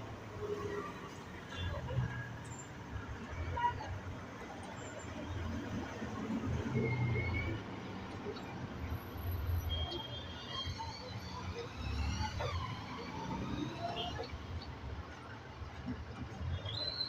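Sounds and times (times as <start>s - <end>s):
vehicle engines rumbling: 0.0s - 17.0s.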